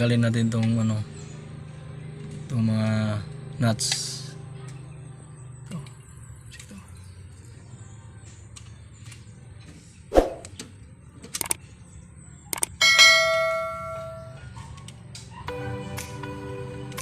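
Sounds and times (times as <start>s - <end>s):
soft music: 15.5s - 17.0s.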